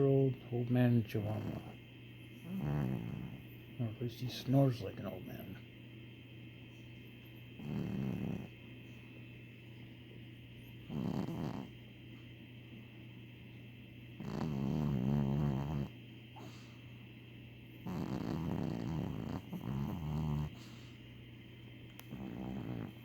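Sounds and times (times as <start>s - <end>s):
dog snoring: 1.1s - 1.8s, 2.4s - 3.7s, 7.5s - 9.0s, 10.6s - 11.9s, 14.2s - 16.8s, 17.7s - 21.0s, 22.0s - 23.0s.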